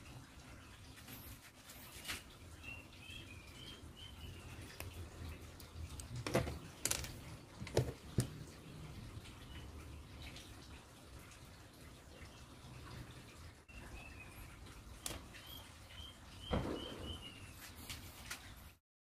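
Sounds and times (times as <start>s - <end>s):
high bird chirps: 15.3s - 17.7s
sharp knocks: 16.5s - 17.4s.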